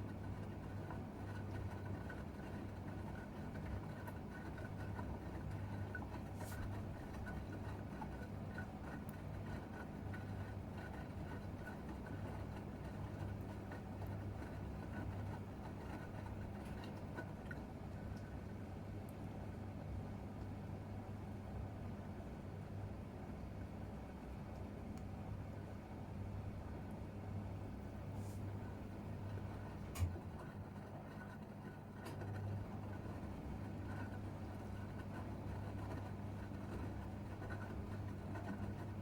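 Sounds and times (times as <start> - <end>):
washing machine motor hum: 0.0 - 18.9, 27.2 - 39.0.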